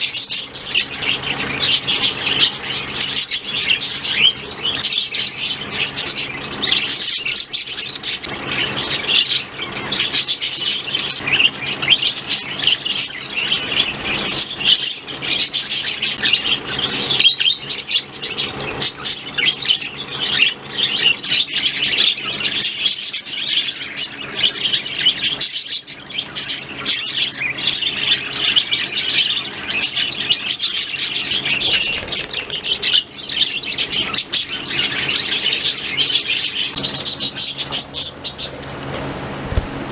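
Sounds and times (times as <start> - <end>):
budgerigars chirping: 0.0 - 38.6.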